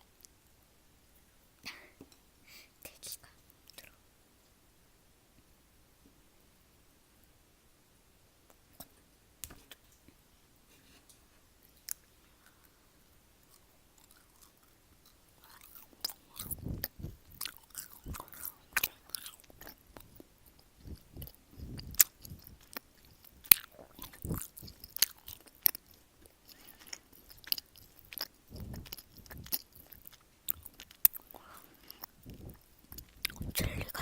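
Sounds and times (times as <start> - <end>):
person chewing candy: 13.4 - 34.0
sharp mouth clicks: 15.4 - 25.8.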